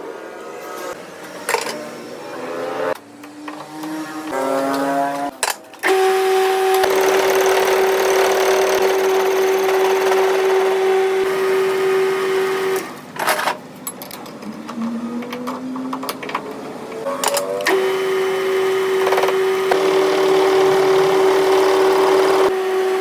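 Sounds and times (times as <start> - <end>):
machine whines: 0.0 - 13.0, 14.4 - 23.0
power tool motor running: 5.9 - 12.8, 17.6 - 23.0.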